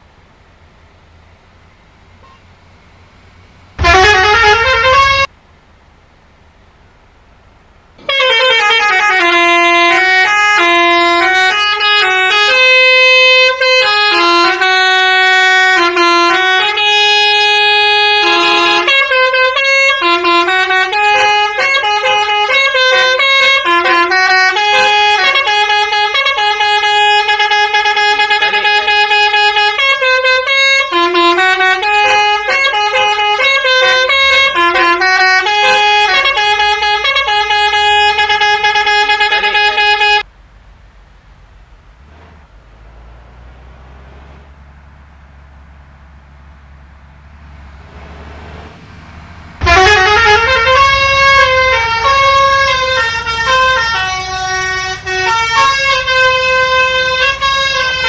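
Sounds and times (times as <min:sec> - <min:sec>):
multi-tone air horn playing a tune: 0:03.8 - 0:05.3, 0:08.0 - 0:40.3, 0:49.6 - 0:58.0.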